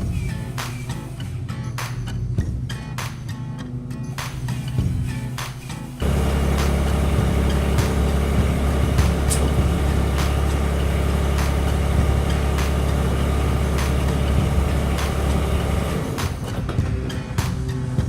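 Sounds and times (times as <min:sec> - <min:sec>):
tractor diesel engine idling: 0:06.0 - 0:16.2.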